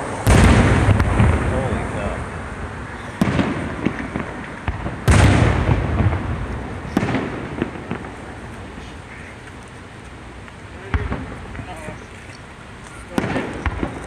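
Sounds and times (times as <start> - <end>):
fireworks bursting: 0.0 - 14.0
rolling rumble: 0.0 - 14.0.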